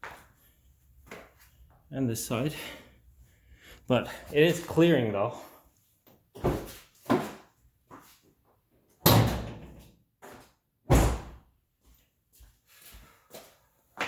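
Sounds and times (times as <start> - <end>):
car hood slamming shut: 9.1 - 9.7, 10.9 - 11.4.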